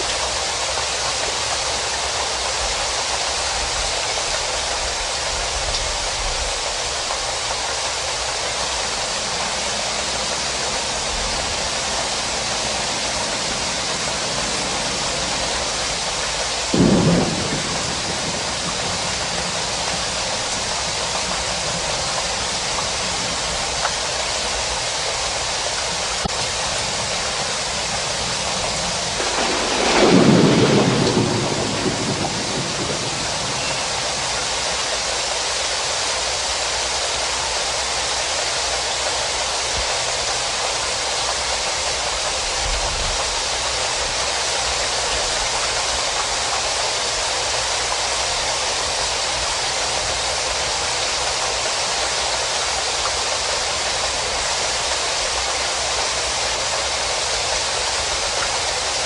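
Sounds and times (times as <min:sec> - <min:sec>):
steady rain hiss: 0:00.0 - 0:59.0
thunder rolling: 0:08.6 - 0:23.8, 0:26.2 - 0:35.3.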